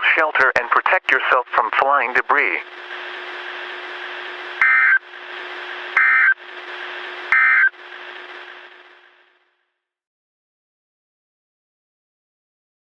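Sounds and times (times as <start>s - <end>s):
radio static: 0.0s - 8.9s
steady low hum: 0.0s - 9.6s
warbling digital data tones: 4.6s - 5.0s, 6.0s - 6.4s, 7.3s - 7.8s.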